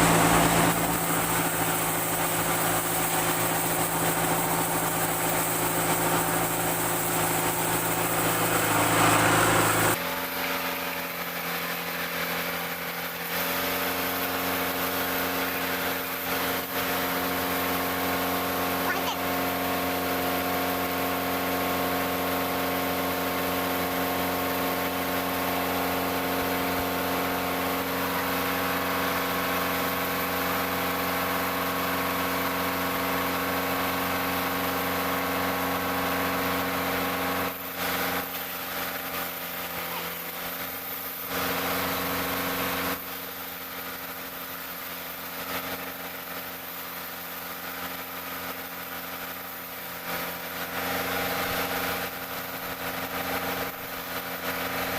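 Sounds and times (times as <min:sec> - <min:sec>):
engine running steadily: 0:00.0 - 0:54.9.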